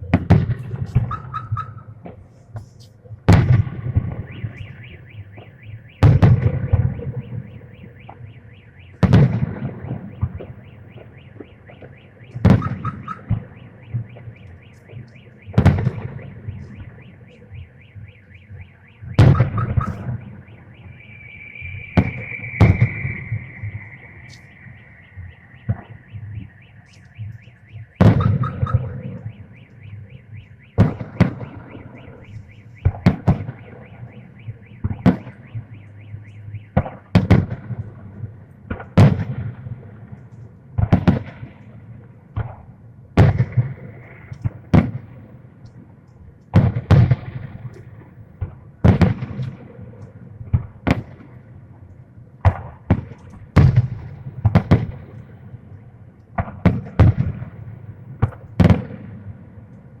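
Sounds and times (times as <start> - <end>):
fireworks bursting with loud bangs: 0.0 - 36.0, 36.6 - 45.9, 46.5 - 51.6, 52.4 - 55.7, 56.3 - 59.6
echoing rumble: 8.7 - 29.6.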